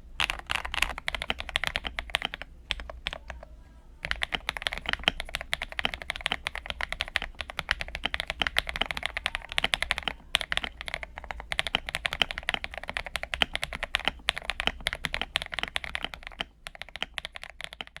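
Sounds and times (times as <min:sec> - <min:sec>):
mechanical keyboard typing: 0:00.0 - 0:18.0.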